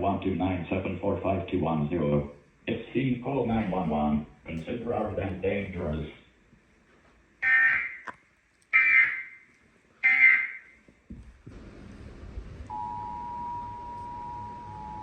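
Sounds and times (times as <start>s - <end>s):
two-tone attention signal: 12.7s - 15.0s.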